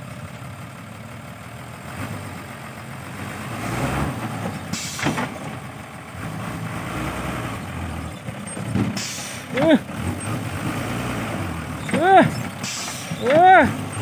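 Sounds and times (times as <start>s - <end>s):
diesel truck engine running: 0.0s - 14.0s
air hiss: 12.6s - 13.3s.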